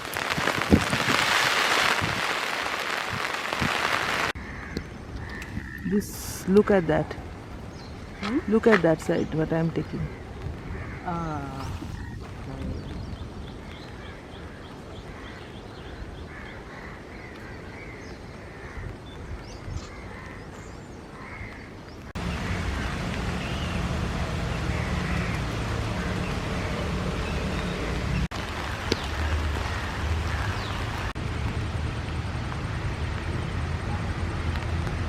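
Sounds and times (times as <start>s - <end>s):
birds calling: 4.3s - 31.2s
steady noise with low rumble: 9.0s - 35.0s.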